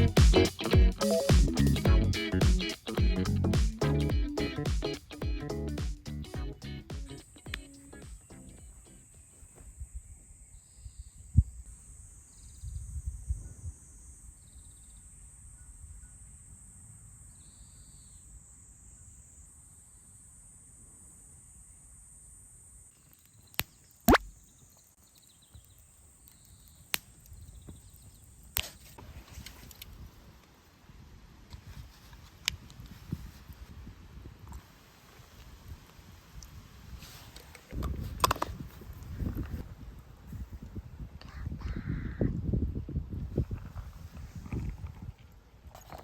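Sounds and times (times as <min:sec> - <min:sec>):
high-pitched hiss: 0:06.9 - 0:30.2.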